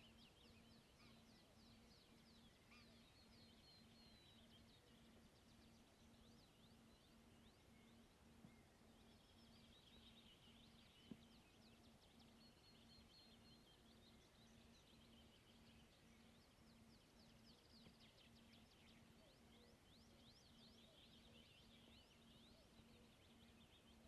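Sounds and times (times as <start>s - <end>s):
faint pulsing low hum: 0.0s - 24.0s
small birds chirping: 0.0s - 24.0s.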